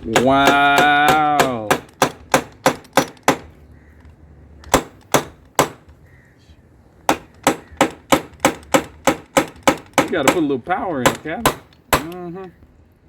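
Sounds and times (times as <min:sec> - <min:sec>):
hammer driving nail into wood: 0:00.0 - 0:03.5, 0:04.7 - 0:05.9, 0:07.1 - 0:12.2.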